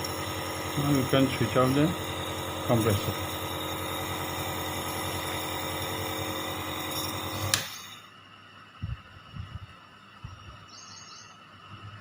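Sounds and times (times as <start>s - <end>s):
nebulizer compressor humming: 0.0s - 8.1s.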